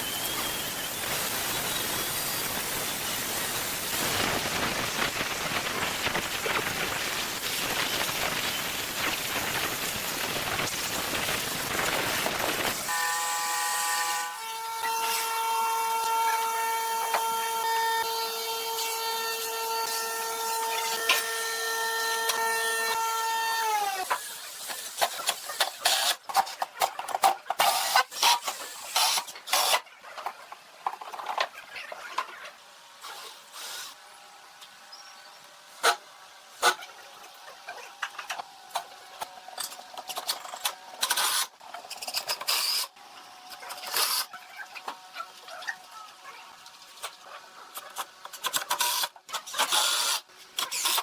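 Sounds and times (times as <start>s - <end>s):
high machine whine: 0.0s - 14.4s.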